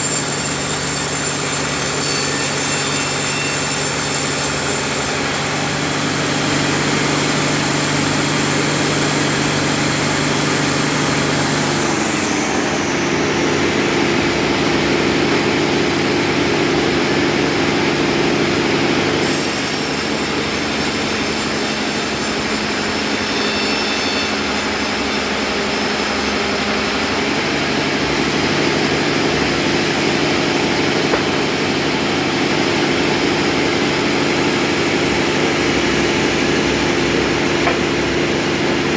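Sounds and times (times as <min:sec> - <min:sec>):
power tool working wood: 0:00.0 - 0:38.9.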